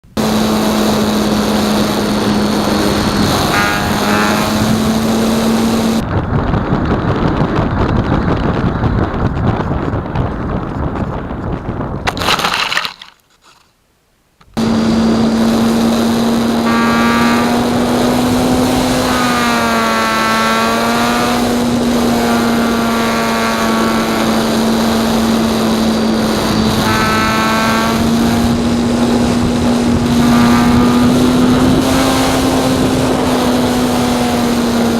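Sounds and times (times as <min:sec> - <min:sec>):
model plane motor droning: 0:00.0 - 0:06.0, 0:14.6 - 0:34.9
wind on microphone: 0:00.0 - 0:12.3, 0:14.6 - 0:34.9.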